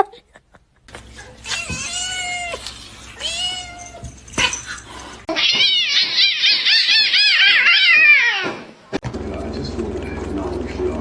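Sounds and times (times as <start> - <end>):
cat meowing: 1.4 - 4.0, 5.3 - 8.7.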